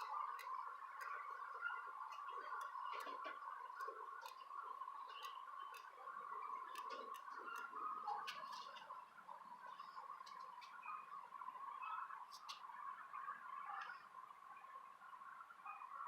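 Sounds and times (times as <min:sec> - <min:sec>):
bicycle wheel ticking: 0:00.0 - 0:06.0
faint high-pitched hum: 0:00.0 - 0:16.0.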